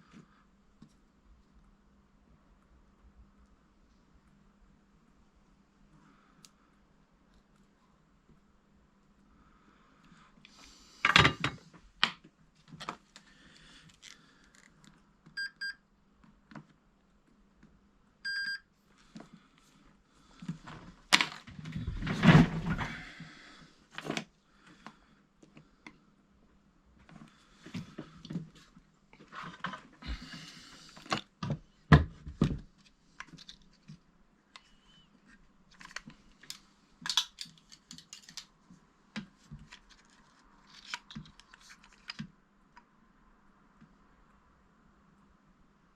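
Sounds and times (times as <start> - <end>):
short electronic beeps: 18.3 - 18.6
tools clicking and knocking: 36.5 - 38.5.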